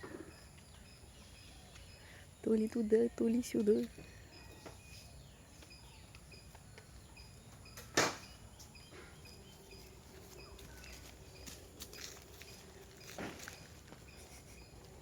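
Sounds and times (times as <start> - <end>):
faint high chirps: 0.0 - 11.6.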